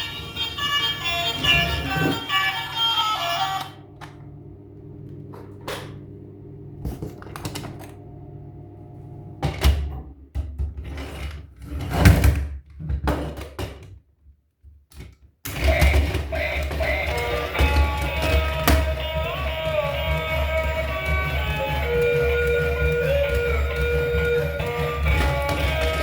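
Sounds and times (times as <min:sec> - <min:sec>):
handling clicks and knocks: 0:14.9 - 0:26.0.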